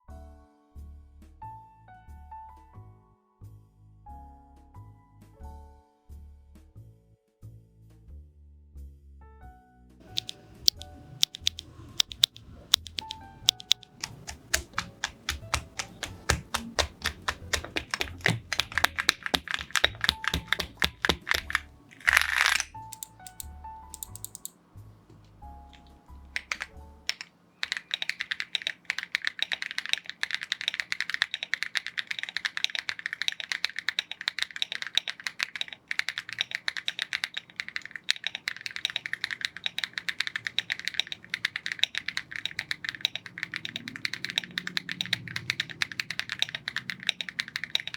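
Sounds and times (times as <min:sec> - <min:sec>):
fast typing on keyboard: 0:10.0 - 0:24.5, 0:25.7 - 0:47.9
keyboard switches clicking into sockets: 0:10.1 - 0:24.5, 0:25.1 - 0:47.9.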